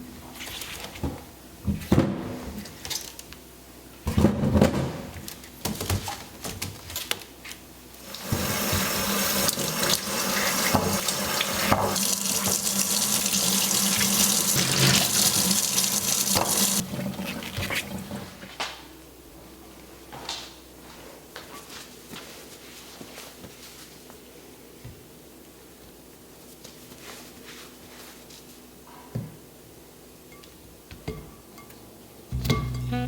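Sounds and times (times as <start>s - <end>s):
tap running into a sink: 8.2s - 18.2s.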